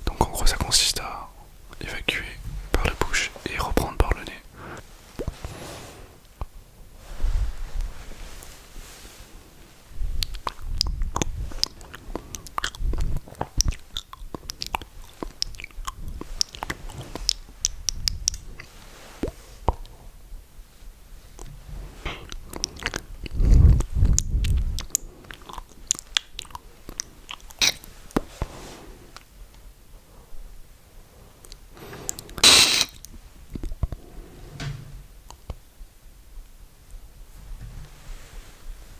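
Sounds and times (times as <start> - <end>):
breath puffs on microphone: 4.3 - 6.3, 7.0 - 9.6, 23.3 - 24.8, 31.3 - 33.0
lip smacks and tongue clicks: 10.2 - 18.7, 22.1 - 28.2.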